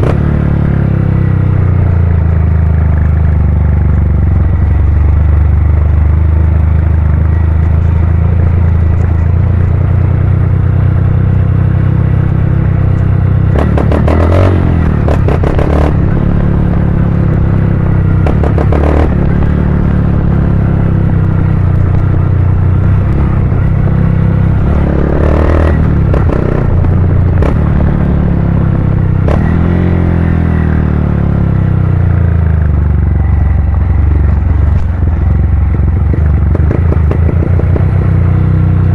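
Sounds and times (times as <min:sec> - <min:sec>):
motorcycle engine rumbling: 0:00.0 - 0:38.9
exhaust popping: 0:12.1 - 0:29.7, 0:33.6 - 0:38.4.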